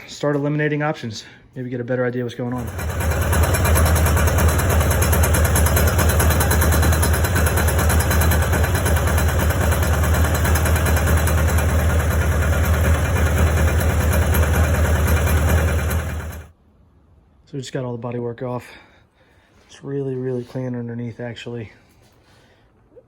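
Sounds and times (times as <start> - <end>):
engine knock: 2.6 - 16.5
motorcycle engine idling: 2.6 - 16.5.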